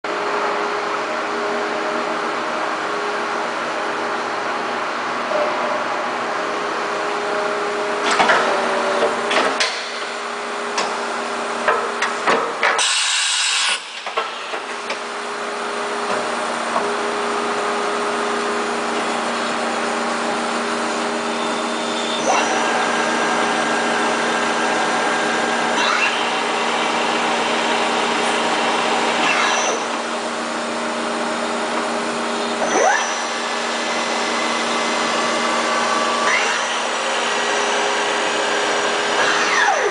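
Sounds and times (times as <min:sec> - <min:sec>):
machine whine: 0:12.8 - 0:39.9.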